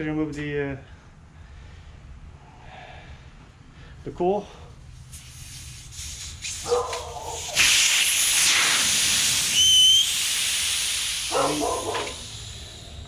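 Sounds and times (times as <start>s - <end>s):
air hissing from tyre valve: 5.0s - 13.0s
brief whistle: 9.4s - 10.4s.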